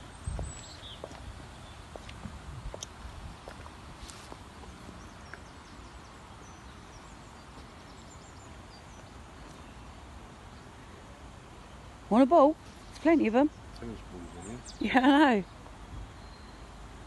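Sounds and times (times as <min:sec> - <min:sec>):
faint bird chirps: 0:12.6 - 0:16.8.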